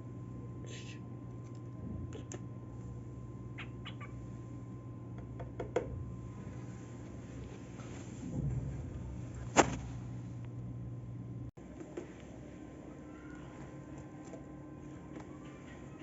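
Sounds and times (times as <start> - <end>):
steady low hum: 0.0 - 16.0
cockatiel chirping: 3.6 - 4.2.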